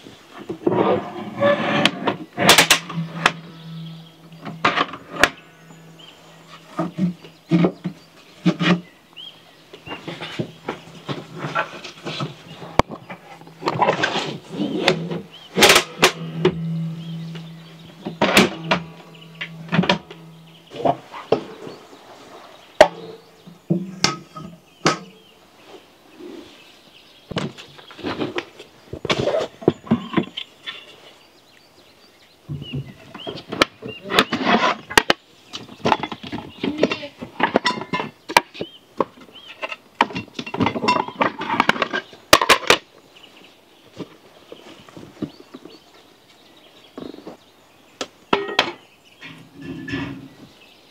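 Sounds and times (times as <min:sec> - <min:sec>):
low steady hum: 0:02.4 - 0:08.0, 0:14.6 - 0:25.3
hard objects knocking and clattering: 0:14.8 - 0:21.6.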